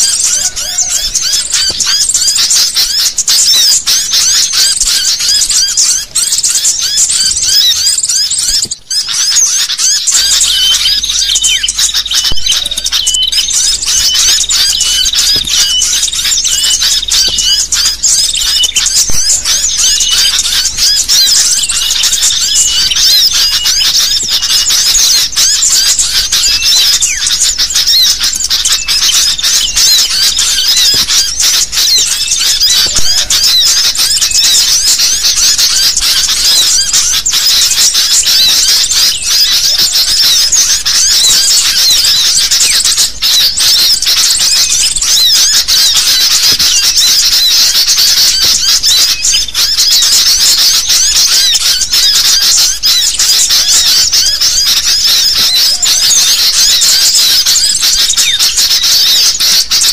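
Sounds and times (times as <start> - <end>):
bulbuls chattering chorus: 0.0 - 59.9.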